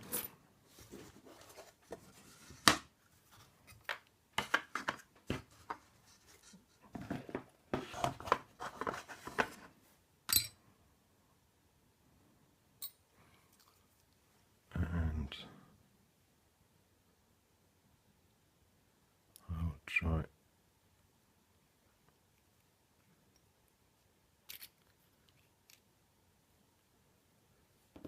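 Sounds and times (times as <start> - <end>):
small metal parts clicking: 24.5 - 25.8.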